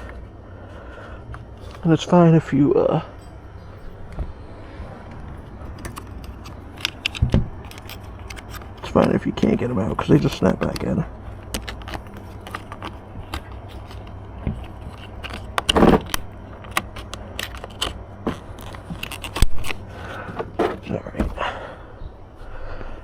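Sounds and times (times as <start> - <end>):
plastic parts rustling: 5.2 - 21.2
plastic clips clicking and rattling: 5.7 - 19.8.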